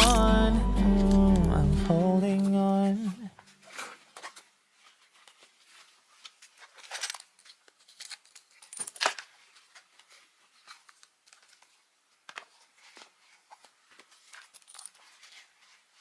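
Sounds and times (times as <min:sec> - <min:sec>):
sharp click: 0:00.0 - 0:01.6.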